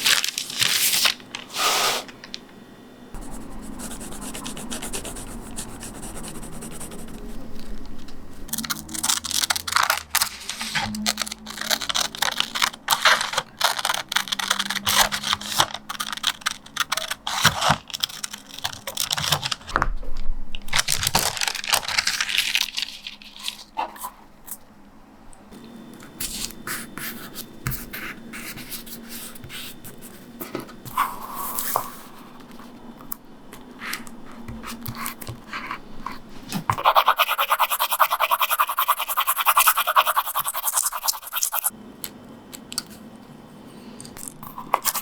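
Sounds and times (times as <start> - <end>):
pencil scratching on paper: 3.2 - 7.5, 36.8 - 41.7.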